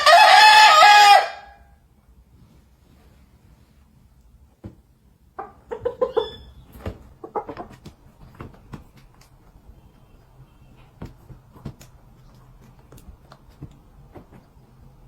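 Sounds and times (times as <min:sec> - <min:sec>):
rooster clucking: 0:05.4 - 0:07.8.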